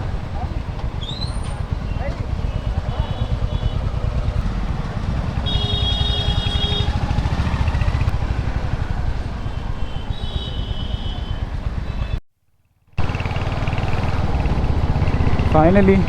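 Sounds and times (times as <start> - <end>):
motorcycle engine rumble: 0.0 - 12.2, 13.0 - 16.0
short vehicle horns: 2.4 - 4.4, 5.2 - 7.8, 9.4 - 12.2.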